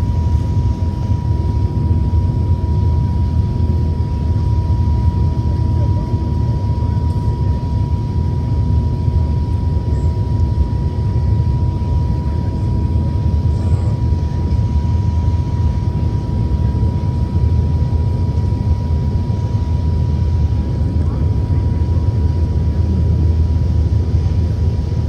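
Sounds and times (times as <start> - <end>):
jet engine rumble in cabin: 0.0 - 25.0.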